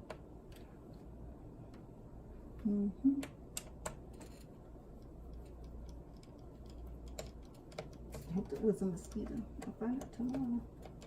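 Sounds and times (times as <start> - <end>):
person humming: 2.6 - 3.3.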